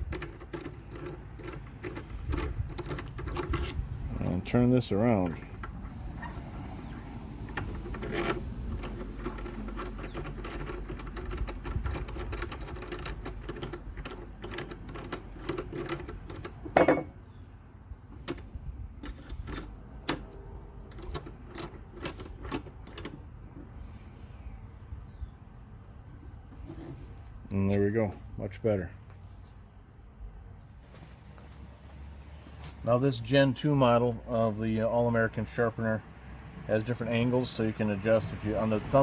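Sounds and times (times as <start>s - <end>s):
metal parts rubbing and scraping: 0.0s - 4.5s, 7.4s - 17.5s, 18.1s - 23.8s
crickets chirping: 0.0s - 31.8s.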